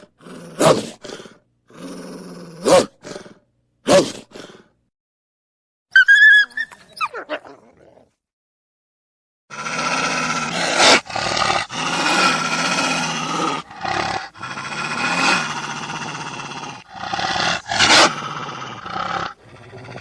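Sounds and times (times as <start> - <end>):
wolf growling: 9.5 - 20.0.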